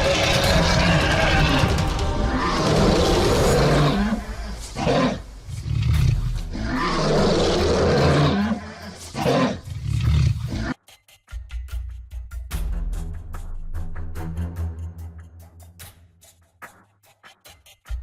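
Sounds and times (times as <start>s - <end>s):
lion roaring: 0.0s - 10.8s.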